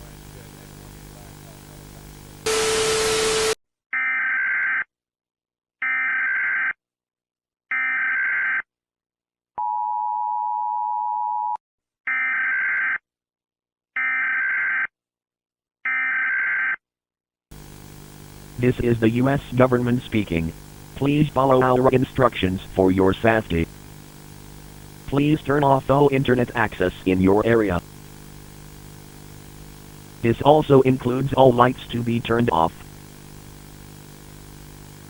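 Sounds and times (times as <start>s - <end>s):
static burst: 0.0s - 3.6s, 17.5s - 35.0s
data bursts: 2.5s - 3.6s, 17.6s - 35.0s.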